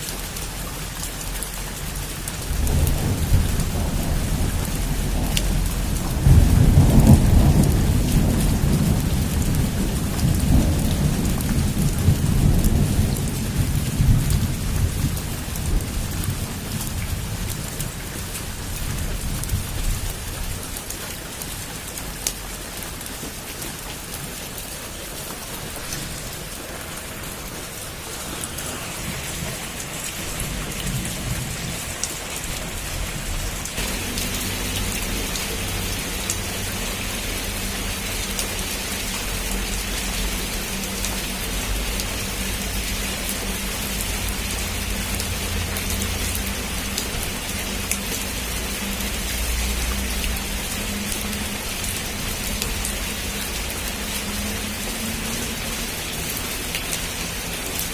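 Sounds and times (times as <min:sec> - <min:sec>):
heavy rain on a roof: 0:00.0 - 0:57.9
thunder rolling: 0:02.4 - 0:17.7, 0:25.4 - 0:37.2.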